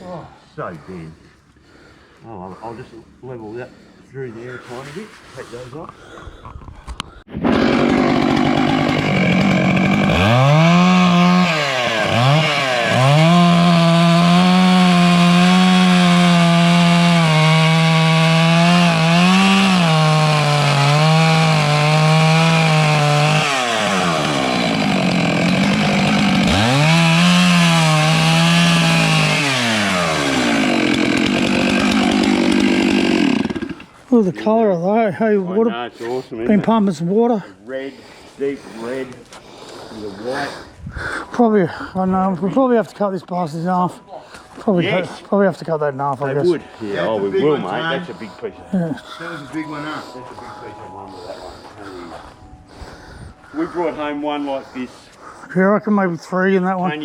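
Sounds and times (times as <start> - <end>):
chainsaw cutting log: 7.3 - 34.0.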